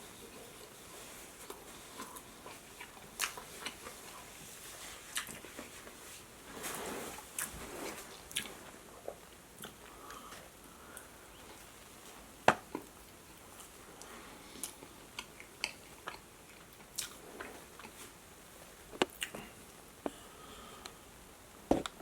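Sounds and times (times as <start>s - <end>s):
chewing and crunching: 0.2s - 6.0s, 12.7s - 18.2s.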